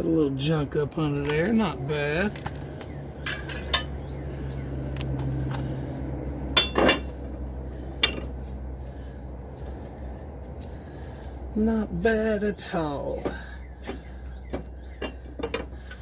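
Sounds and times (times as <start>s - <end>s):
hand tools clinking on metal: 3.2s - 4.0s, 6.5s - 8.6s, 14.5s - 16.0s.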